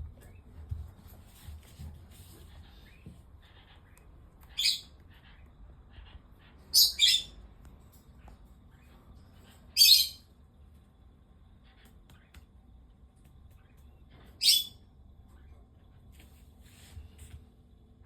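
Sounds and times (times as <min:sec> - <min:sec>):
cockatiel calling: 0:02.9 - 0:07.3.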